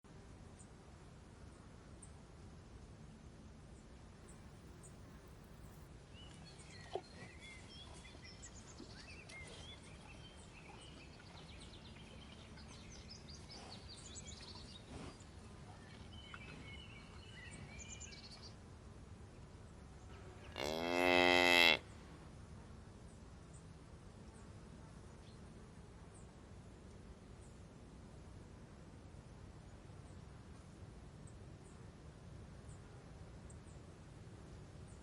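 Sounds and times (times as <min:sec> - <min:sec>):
cow mooing: 0:20.5 - 0:21.8.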